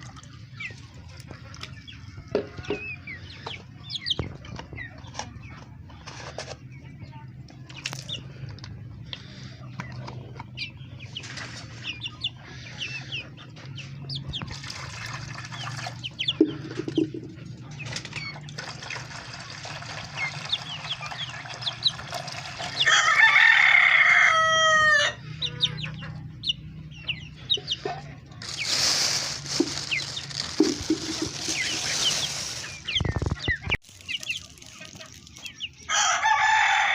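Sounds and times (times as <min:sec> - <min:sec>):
chickens clucking and cheeping: 0:00.0 - 0:36.9
rooster crowing: 0:22.8 - 0:25.2, 0:35.9 - 0:36.9.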